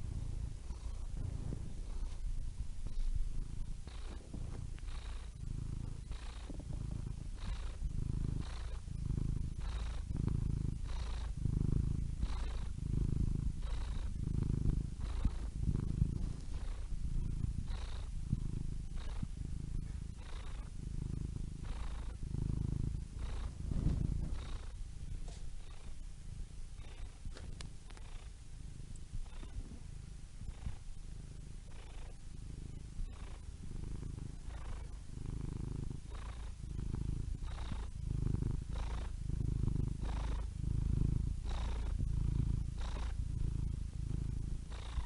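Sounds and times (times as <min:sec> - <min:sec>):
cat purring: 0:00.0 - 0:45.0.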